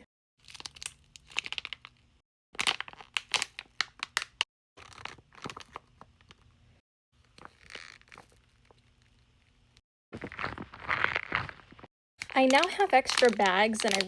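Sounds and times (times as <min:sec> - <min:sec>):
plastic bag crinkling: 0:10.2 - 0:14.0.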